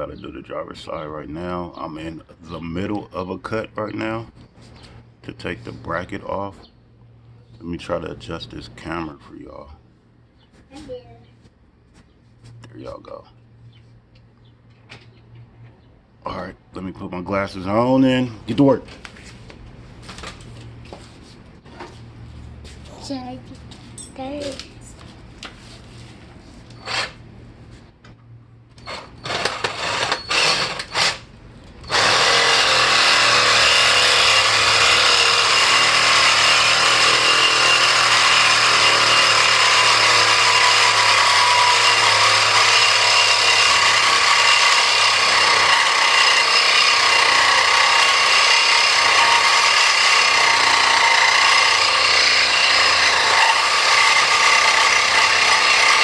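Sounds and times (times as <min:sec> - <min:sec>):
power tool cutting metal: 0:28.8 - 0:31.2, 0:31.8 - 0:56.0.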